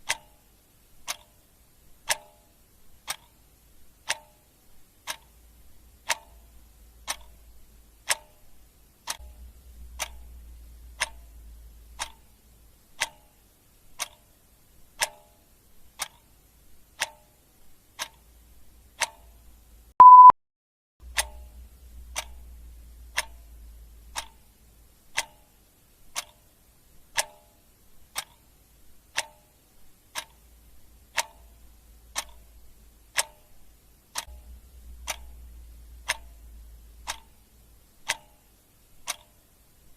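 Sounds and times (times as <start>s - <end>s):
clock ticking: 0.0s - 20.3s, 21.0s - 39.9s
short high beep: 20.0s - 20.4s.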